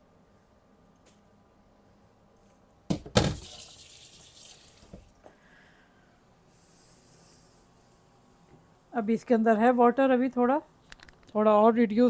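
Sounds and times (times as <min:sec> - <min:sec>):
liquid being poured: 0:03.2 - 0:05.0.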